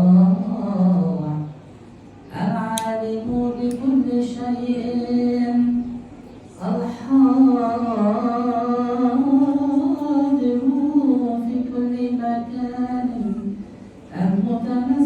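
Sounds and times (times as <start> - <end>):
person chanting unaccompanied: 0.0 - 1.6, 6.6 - 15.0.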